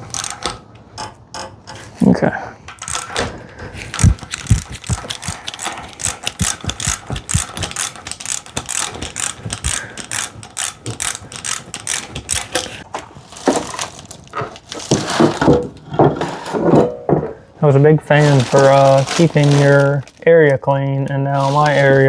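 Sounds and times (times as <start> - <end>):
socket ratchet clicking: 0.0 - 2.0, 2.8 - 3.3, 3.9 - 12.8
rustling handling noise: 1.7 - 16.9, 17.7 - 22.0.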